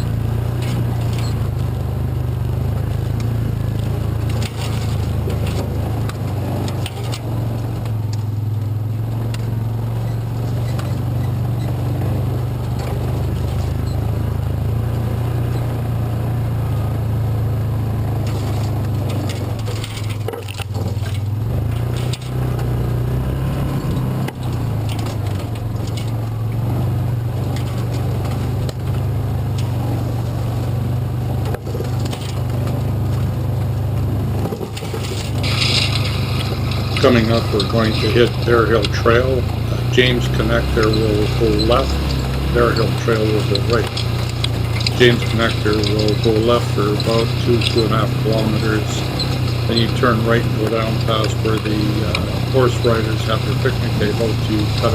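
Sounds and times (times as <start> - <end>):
vehicle engine droning: 0.0 - 54.9
knocks and scrapes: 2.8 - 8.4, 18.2 - 26.7, 31.4 - 54.9.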